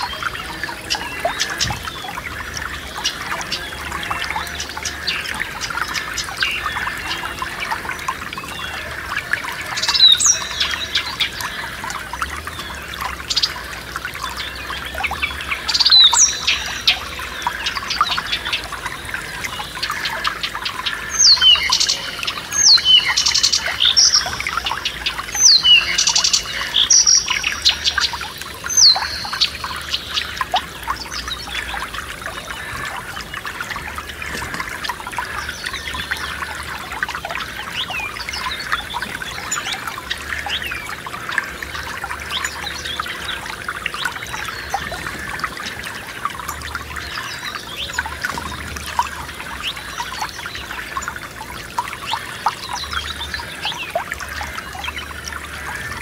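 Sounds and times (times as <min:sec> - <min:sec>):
stream trickling over stones: 0:00.0 - 0:56.0
small birds chirping: 0:08.4 - 0:32.8.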